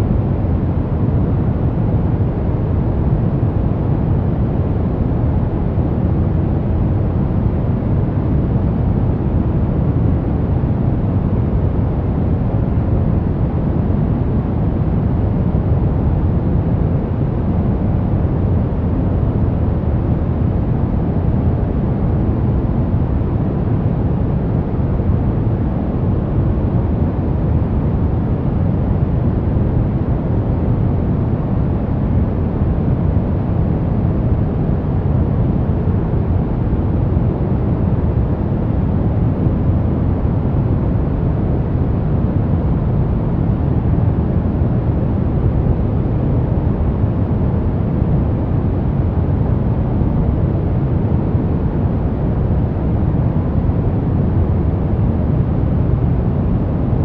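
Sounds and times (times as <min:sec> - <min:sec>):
deep white noise: 0:00.0 - 0:57.0.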